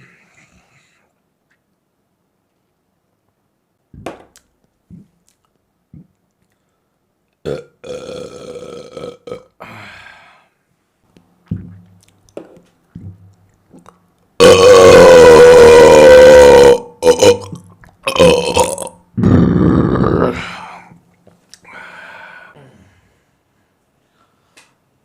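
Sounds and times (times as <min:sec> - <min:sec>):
person burping: 0:07.4 - 0:09.8, 0:13.8 - 0:20.9
small clicks and gulps: 0:11.4 - 0:14.3.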